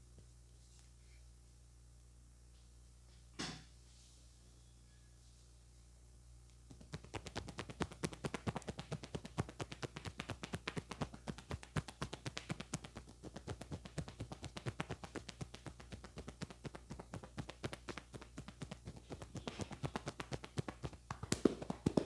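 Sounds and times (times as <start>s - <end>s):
hands tapping on a head: 6.7s - 22.0s.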